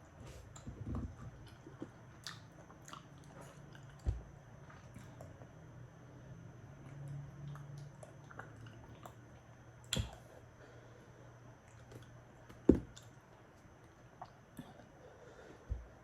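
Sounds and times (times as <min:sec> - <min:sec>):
chewing with wet clicks: 0:01.4 - 0:04.1, 0:06.8 - 0:10.2, 0:12.9 - 0:14.9.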